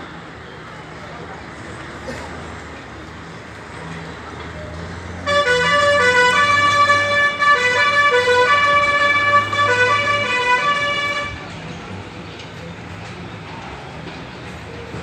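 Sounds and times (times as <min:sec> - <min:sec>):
two-tone vehicle horn: 0:05.2 - 0:11.6.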